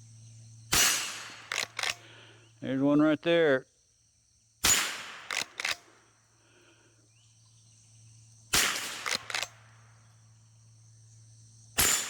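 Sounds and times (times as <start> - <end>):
rifle gunshot: 0.7 - 2.0, 4.6 - 5.8, 8.5 - 9.8, 11.8 - 12.0
light metallic clicks: 1.5 - 2.1, 5.3 - 5.9, 9.0 - 9.6.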